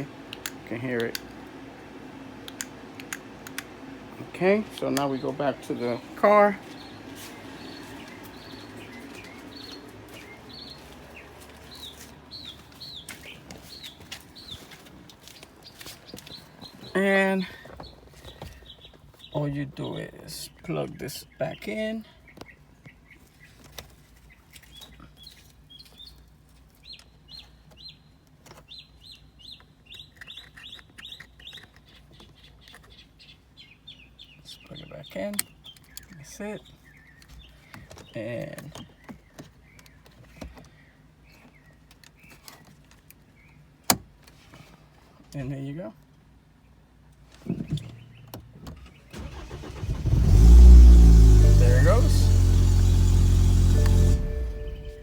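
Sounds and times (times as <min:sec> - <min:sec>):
small bird chirping: 0:04.8 - 0:17.0, 0:26.8 - 0:38.2
low steady hum: 0:49.2 - 0:55.0
bird chirping high notes: 0:51.4 - 0:55.0.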